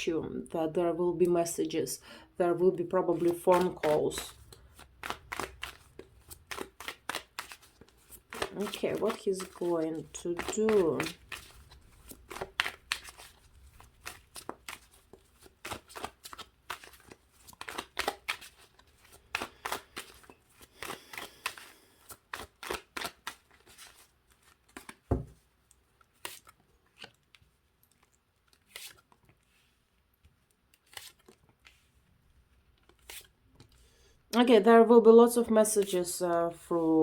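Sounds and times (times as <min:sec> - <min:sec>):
cards shuffling and flicking: 0:03.0 - 0:32.0, 0:32.6 - 0:33.8
thump on table: 0:25.1 - 0:25.4.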